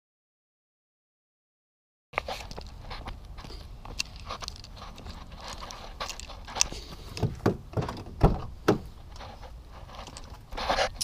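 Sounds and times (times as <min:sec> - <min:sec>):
loud thump: 0:07.2 - 0:08.9.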